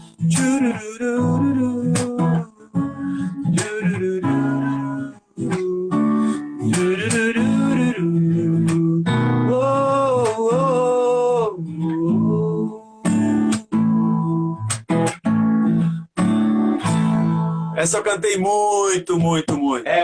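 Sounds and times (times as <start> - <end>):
acoustic guitar strumming: 0.0 - 20.0
person humming a melody: 0.4 - 13.0.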